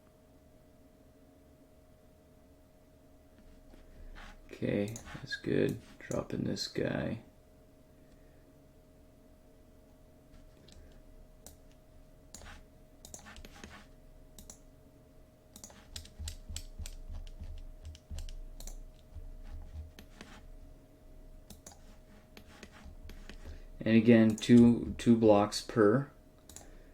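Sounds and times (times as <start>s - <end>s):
faint steady hum: 0.0s - 26.9s
keyboard and mouse clicking: 10.6s - 13.8s, 14.4s - 14.6s, 15.5s - 20.4s, 21.5s - 23.5s, 24.2s - 24.7s, 26.4s - 26.7s.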